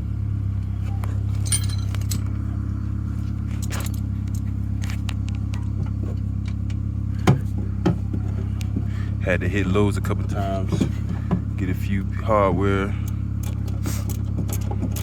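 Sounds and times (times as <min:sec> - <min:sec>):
low engine drone: 0:00.0 - 0:15.0
metal tools clinking: 0:00.8 - 0:08.8.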